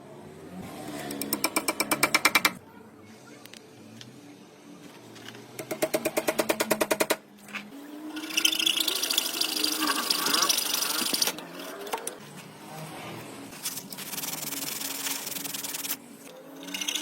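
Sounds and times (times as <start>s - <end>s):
woodworking tool rapid strokes: 8.1s - 11.4s, 13.6s - 17.0s.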